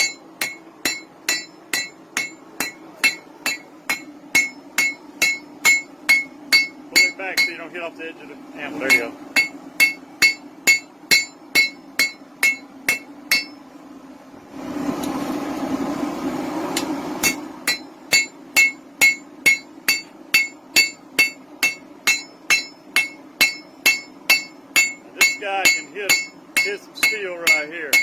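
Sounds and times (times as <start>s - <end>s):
hammer striking metal on anvil: 0.0s - 7.7s, 8.8s - 13.6s, 17.2s - 28.0s
steady rushing noise: 14.4s - 20.0s.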